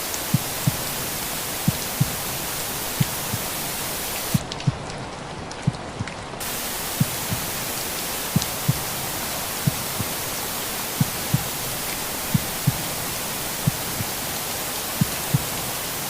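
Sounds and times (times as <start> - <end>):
white noise hiss: 0.0 - 4.7, 6.4 - 16.0
steady rain: 0.0 - 16.0
slow heartbeat: 0.3 - 1.0, 1.6 - 2.4, 3.0 - 3.6, 4.3 - 4.9, 5.6 - 6.1, 6.8 - 7.7, 8.3 - 10.2, 10.9 - 14.2, 15.0 - 15.7.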